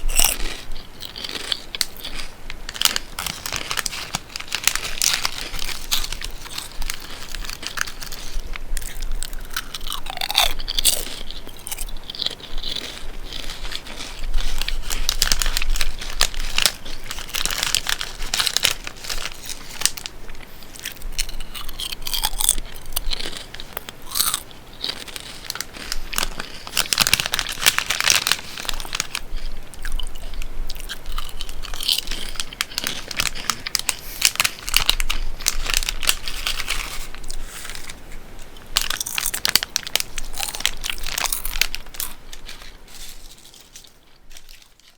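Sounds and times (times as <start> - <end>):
chewing crisp potato chips: 0.0 - 44.9.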